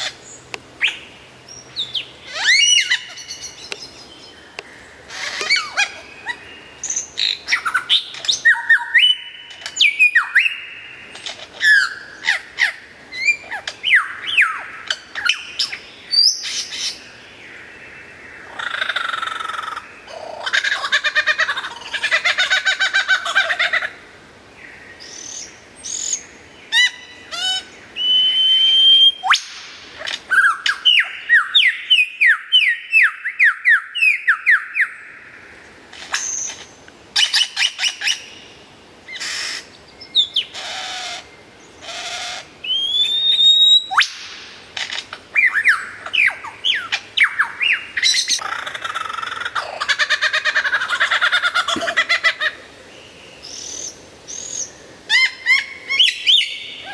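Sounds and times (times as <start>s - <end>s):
lyrebird mimicking calls: 40.4s - 43.1s, 44.8s - 52.6s.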